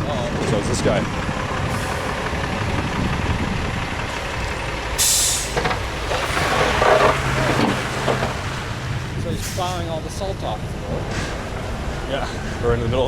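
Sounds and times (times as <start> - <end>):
diesel engine rumble: 0.0 - 13.0
air-brake hiss: 5.0 - 5.6.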